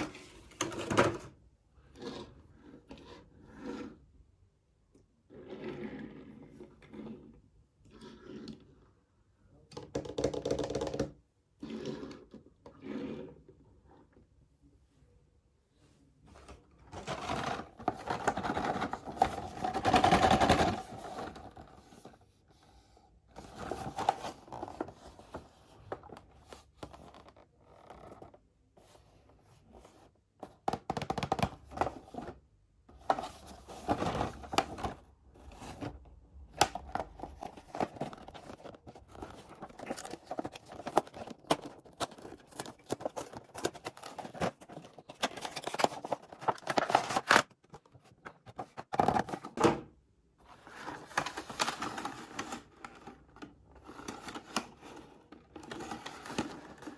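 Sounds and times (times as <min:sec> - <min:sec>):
plastic and cardboard rustling: 0:16.3 - 0:22.6, 0:23.3 - 0:49.8, 0:50.4 - 0:56.9.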